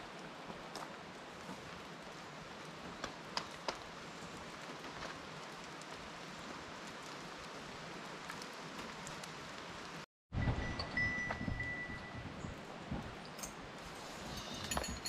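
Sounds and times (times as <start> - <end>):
rain pattering: 0.0 - 10.1.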